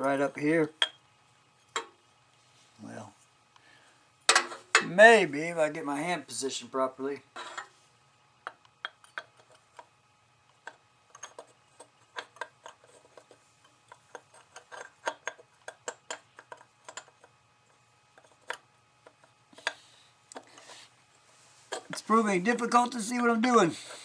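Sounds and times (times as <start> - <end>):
small parts clicking and tapping: 8.4 - 9.9, 10.5 - 20.7.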